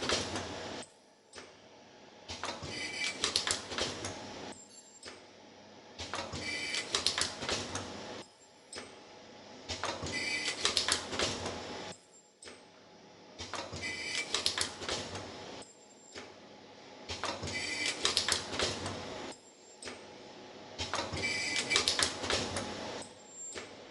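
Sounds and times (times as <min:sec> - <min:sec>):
machine clicking and clattering: 0:02.3 - 0:04.2, 0:06.0 - 0:07.9, 0:09.7 - 0:11.6, 0:13.4 - 0:15.2, 0:17.1 - 0:19.0, 0:20.8 - 0:22.7.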